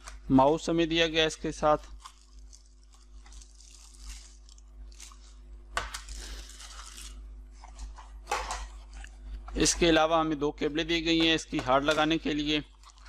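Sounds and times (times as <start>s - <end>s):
low electrical hum: 0.0s - 13.0s
packaging crinkling: 1.8s - 8.0s, 12.7s - 13.0s
packaging rustling: 1.9s - 8.0s.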